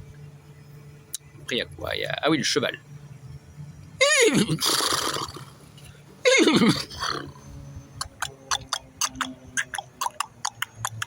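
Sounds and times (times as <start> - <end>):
man imitating horse whinny: 4.0 - 5.5, 6.2 - 7.4
mouth clicks imitating hooves: 8.0 - 11.0.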